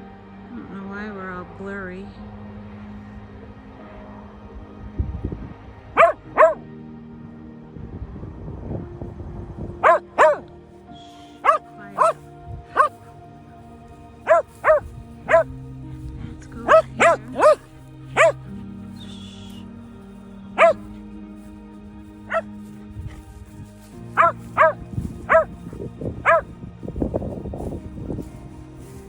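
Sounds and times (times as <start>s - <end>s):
dogs barking: 6.0s - 6.6s, 9.8s - 10.4s, 11.4s - 13.1s, 14.2s - 15.6s, 16.6s - 18.6s, 20.6s - 20.9s, 22.2s - 22.5s, 23.1s - 26.5s.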